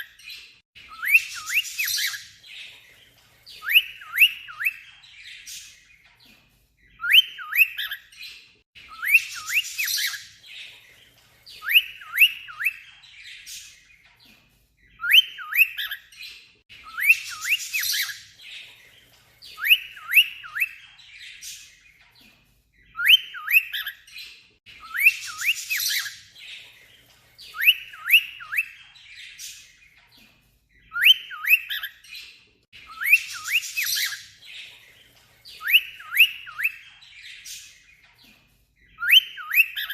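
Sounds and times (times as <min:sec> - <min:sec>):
cockatiel whistling chirps: 0:00.9 - 0:02.3, 0:03.5 - 0:05.7, 0:07.0 - 0:08.0, 0:08.9 - 0:10.3, 0:11.6 - 0:13.7, 0:15.0 - 0:16.0, 0:16.8 - 0:18.2, 0:19.6 - 0:21.6, 0:22.9 - 0:24.0, 0:24.8 - 0:26.2, 0:27.5 - 0:28.8, 0:30.9 - 0:32.0, 0:32.8 - 0:34.3, 0:35.5 - 0:37.7, 0:39.0 - 0:39.9.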